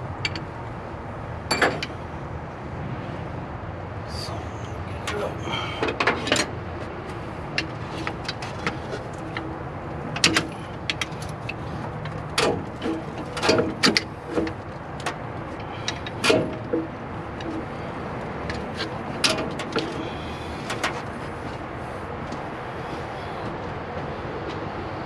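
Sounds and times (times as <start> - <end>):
metal tools clicking and clanking: 1.5 - 1.9.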